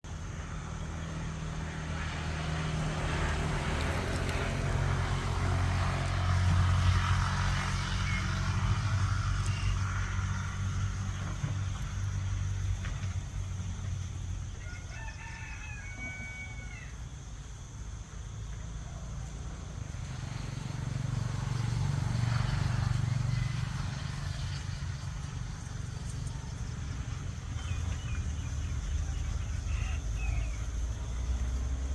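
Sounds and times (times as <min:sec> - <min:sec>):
drawn-out animal call: 0:03.1 - 0:12.3, 0:22.3 - 0:31.9.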